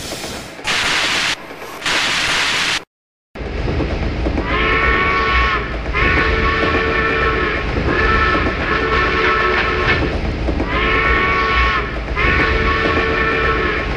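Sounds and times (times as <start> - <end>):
train rumbling: 0.0 - 2.8, 3.4 - 13.9
steam train whistle: 4.5 - 9.8, 10.7 - 13.9.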